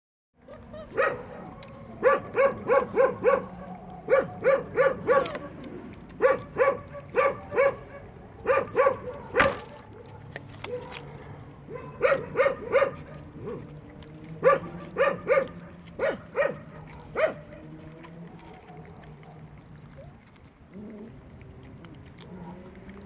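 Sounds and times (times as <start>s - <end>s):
dog barking: 0.9s - 5.5s, 6.2s - 11.1s, 11.7s - 13.6s, 14.4s - 17.6s.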